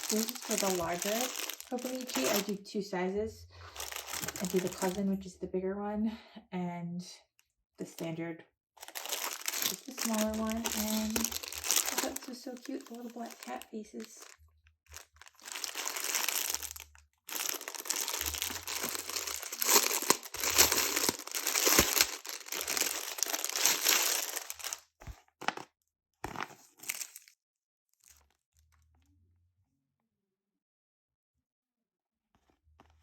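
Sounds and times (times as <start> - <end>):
packaging crinkling and rustling: 0.0 - 2.6, 3.7 - 5.0, 8.8 - 25.6, 26.2 - 27.3.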